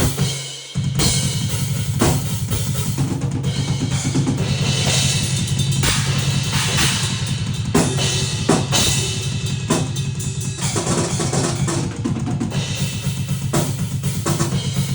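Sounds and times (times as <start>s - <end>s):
drum hits: 0.0s - 14.9s.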